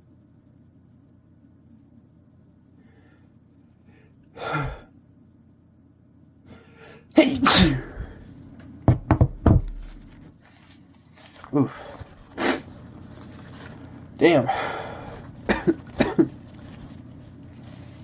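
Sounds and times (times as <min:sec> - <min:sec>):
man sneezing: 0:07.1 - 0:08.2.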